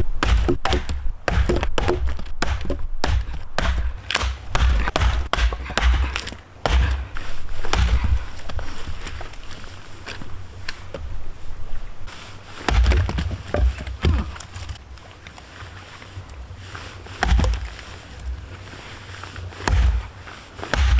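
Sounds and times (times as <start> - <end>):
axe splitting firewood: 0.0 - 11.2, 12.1 - 15.0, 17.2 - 18.4, 19.0 - 20.9.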